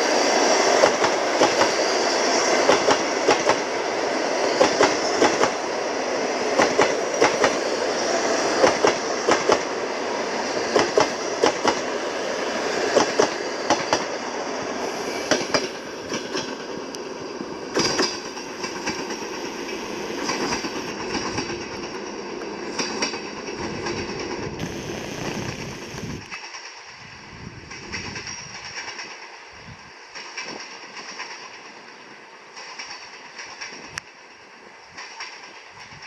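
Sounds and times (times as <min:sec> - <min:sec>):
train rolling rumble: 0:00.0 - 0:36.0
train wheels clicking over rail joints: 0:00.8 - 0:01.8, 0:02.6 - 0:03.7, 0:04.6 - 0:05.6, 0:06.5 - 0:07.7, 0:08.4 - 0:09.8, 0:10.6 - 0:11.9, 0:12.6 - 0:24.9, 0:30.1 - 0:36.0.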